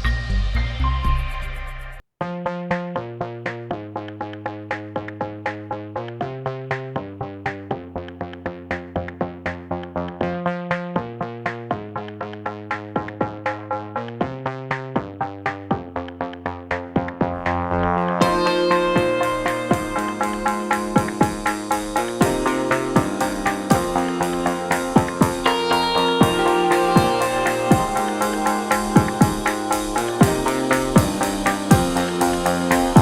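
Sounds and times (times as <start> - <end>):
fast electronic beat: 11.0 - 33.0
sustained synthesizer chords: 17.1 - 33.0.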